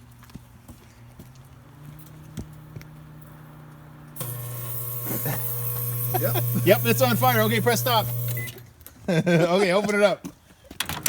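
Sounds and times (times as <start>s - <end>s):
microwave oven humming: 2.0s - 8.7s
foil sparking crackles: 4.1s - 8.6s
loud buzzing hiss of arcing foil: 4.2s - 8.6s.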